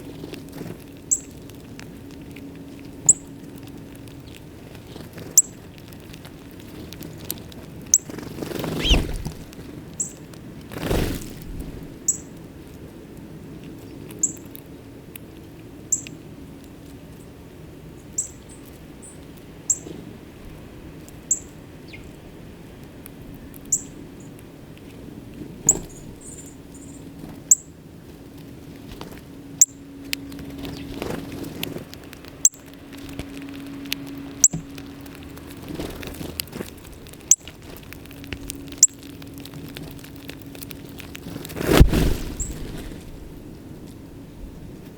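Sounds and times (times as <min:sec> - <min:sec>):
bird chip calls: 0:08.7 - 0:09.4.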